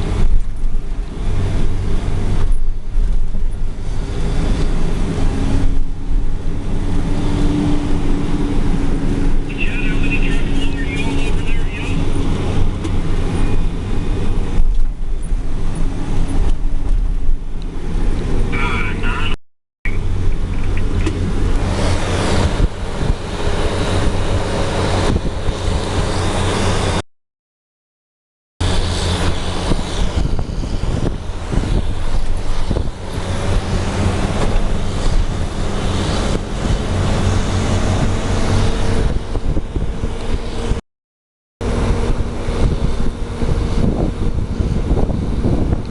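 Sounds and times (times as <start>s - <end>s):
diesel machinery rumble: 0.0s - 27.0s, 28.6s - 40.8s, 41.6s - 45.9s.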